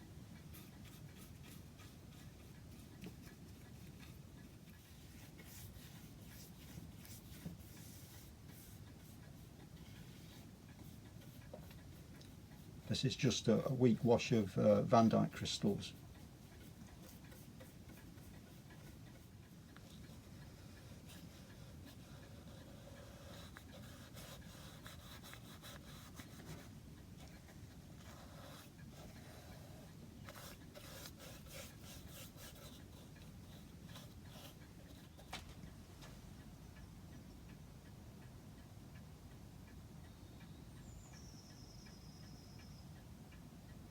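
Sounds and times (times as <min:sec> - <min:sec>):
scratchy rubbing on wood: 0:15.0 - 0:35.2.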